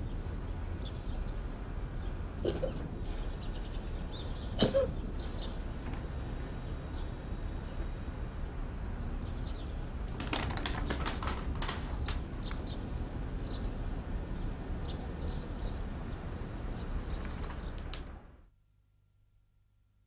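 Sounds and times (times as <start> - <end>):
low steady rumble: 0.0 - 18.6
person hiccuping: 2.4 - 2.9, 4.6 - 5.0
quick run of clicks: 10.1 - 12.7, 17.1 - 18.1.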